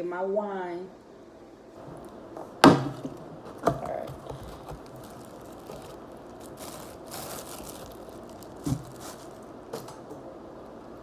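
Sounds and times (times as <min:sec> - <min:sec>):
rustling and crinkling: 0:01.8 - 0:10.0.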